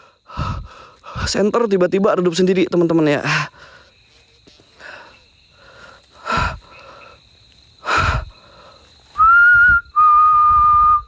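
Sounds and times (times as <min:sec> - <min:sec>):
heavy breaths into microphone: 0:00.0 - 0:01.4, 0:03.2 - 0:09.2
loud steady whistle: 0:09.2 - 0:11.0.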